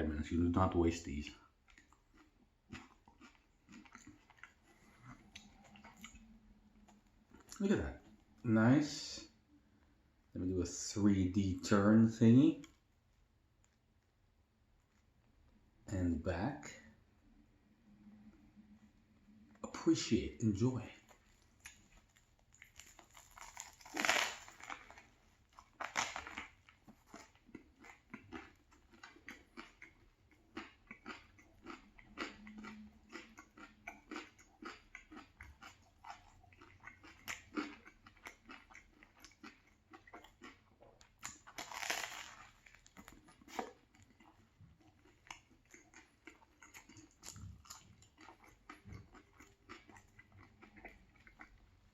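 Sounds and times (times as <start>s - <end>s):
crunchy sandwich chewing: 1.4s - 8.5s, 21.0s - 51.9s.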